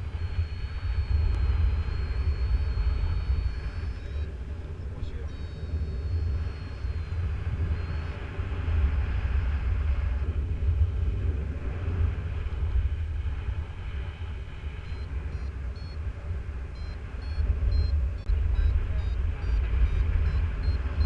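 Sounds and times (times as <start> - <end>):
faint high beeps: 0.0 - 8.4, 14.7 - 16.0, 16.7 - 21.0
wind buffeting microphone: 0.0 - 21.0.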